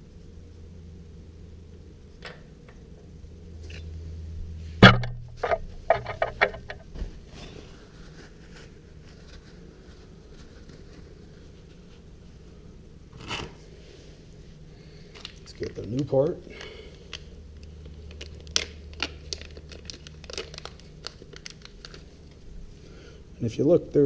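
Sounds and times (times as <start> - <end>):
tools clicking and clattering: 4.9 - 6.8.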